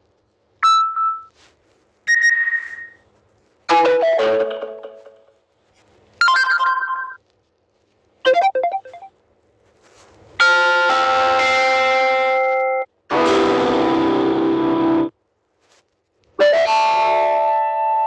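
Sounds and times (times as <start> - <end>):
held chord: 3.7 - 5.2
short plucked notes: 3.7 - 5.2.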